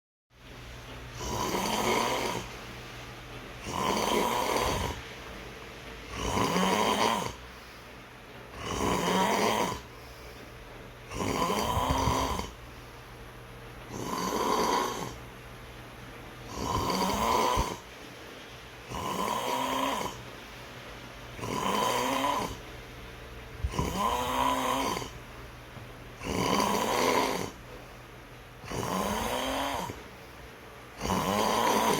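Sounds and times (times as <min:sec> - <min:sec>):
person snoring: 0:01.1 - 0:02.6, 0:03.6 - 0:05.0, 0:06.1 - 0:07.7, 0:08.5 - 0:10.3, 0:11.1 - 0:12.8, 0:13.9 - 0:15.2, 0:16.5 - 0:17.9, 0:18.8 - 0:20.2, 0:21.4 - 0:22.6, 0:23.6 - 0:25.3, 0:26.2 - 0:27.6, 0:28.6 - 0:30.3, 0:31.0 - 0:31.9.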